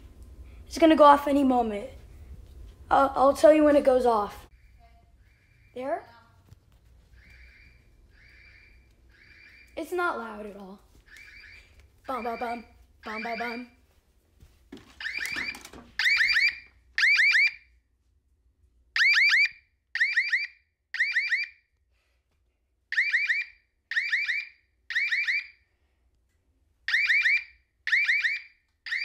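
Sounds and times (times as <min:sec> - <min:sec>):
alarm siren warbling beeps: 0:04.5 - 0:06.3, 0:07.0 - 0:09.8, 0:11.1 - 0:13.8, 0:15.0 - 0:17.6, 0:19.0 - 0:21.6, 0:22.9 - 0:25.6, 0:26.9 - 0:29.0.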